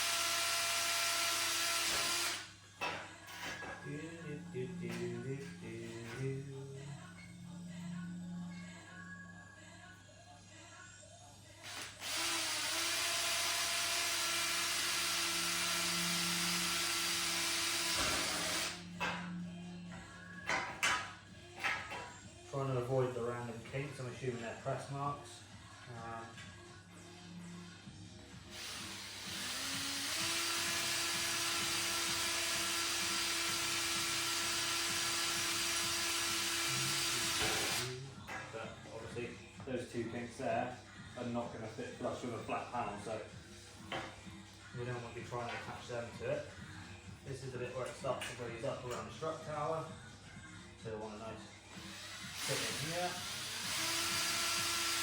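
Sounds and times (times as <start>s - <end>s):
electric drill boring through metal: 0.0s - 3.6s, 11.6s - 19.2s, 28.5s - 38.4s, 51.7s - 55.0s.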